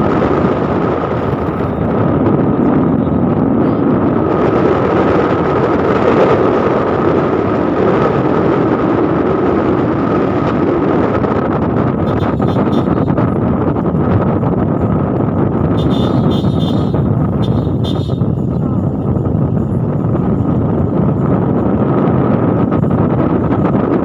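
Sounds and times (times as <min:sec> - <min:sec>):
vehicle engine and road noise: 0:00.0 - 0:24.0
thin whine: 0:11.9 - 0:13.8.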